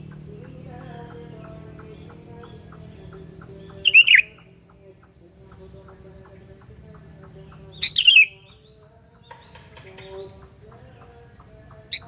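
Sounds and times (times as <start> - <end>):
faint low hum: 0.0 - 12.0
bird call of two notes: 3.7 - 4.5.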